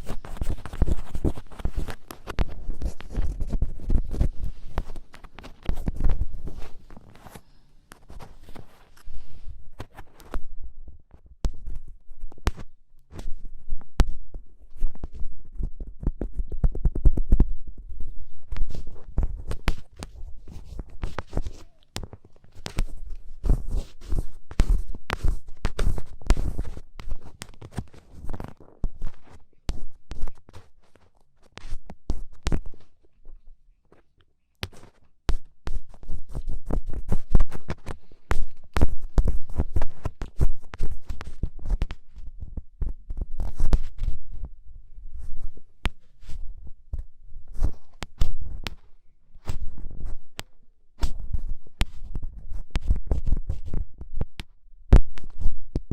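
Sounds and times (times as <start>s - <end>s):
ear pick scraping microphone: 0.0s - 10.5s.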